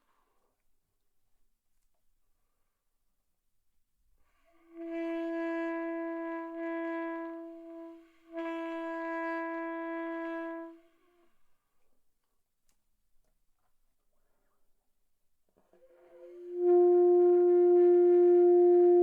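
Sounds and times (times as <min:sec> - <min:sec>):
saxophone long held notes: 0:04.6 - 0:11.2, 0:15.8 - 0:19.0.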